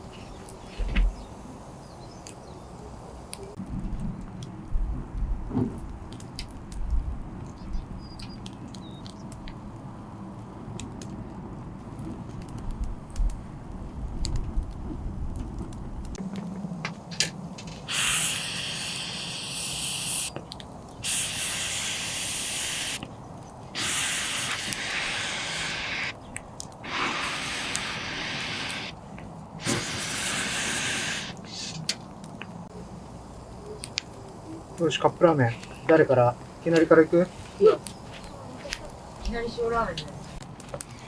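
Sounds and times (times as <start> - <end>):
bursts of hissing: 17.8 - 26.2, 26.8 - 31.9.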